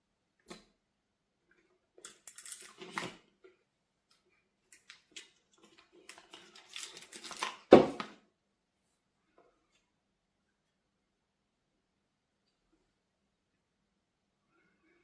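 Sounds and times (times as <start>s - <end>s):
objects rustling and clicking: 2.0s - 8.1s.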